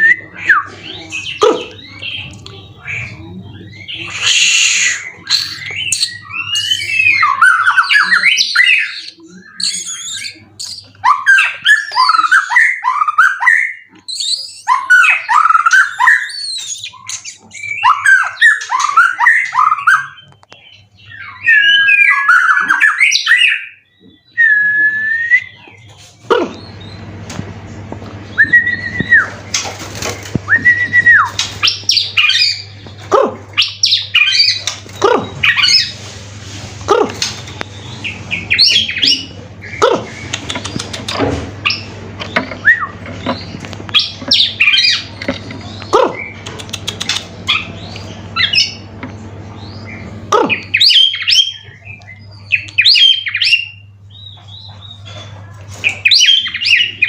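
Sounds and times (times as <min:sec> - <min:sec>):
songbird whistles and trills: 0:03.8 - 0:25.8, 0:28.3 - 0:29.5, 0:30.3 - 0:32.7, 0:37.6 - 0:45.1.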